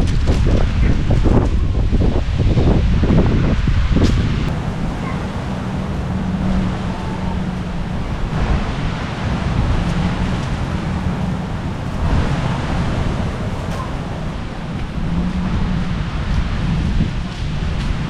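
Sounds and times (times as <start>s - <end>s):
wind rushing over microphone: 0.0s - 18.0s
low steady hum: 4.5s - 17.9s.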